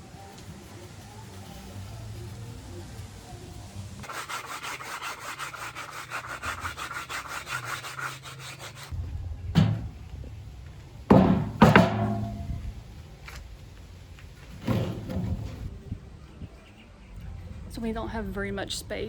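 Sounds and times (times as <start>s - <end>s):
sandpaper rubbing on wood: 4.0s - 9.0s
loud wooden knocks: 9.5s - 10.1s, 11.1s - 12.6s, 14.6s - 15.6s.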